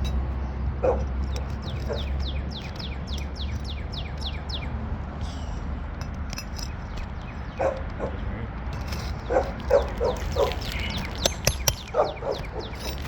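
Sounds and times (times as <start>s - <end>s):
dog barking: 0.8s - 1.1s, 7.6s - 8.3s, 9.2s - 10.7s, 11.9s - 12.8s
bird singing whistled notes: 1.7s - 5.5s.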